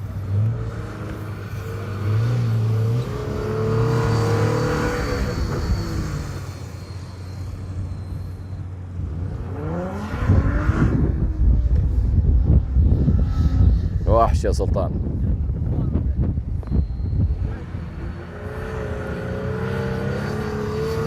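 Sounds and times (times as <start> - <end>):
engine revving hard: 2.0 - 6.4, 18.0 - 21.0.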